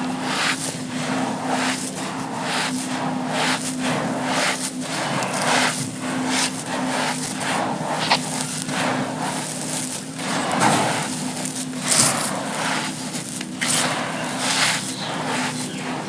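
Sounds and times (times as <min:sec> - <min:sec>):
sand crumbling and crunching: 0:01.8 - 0:16.0.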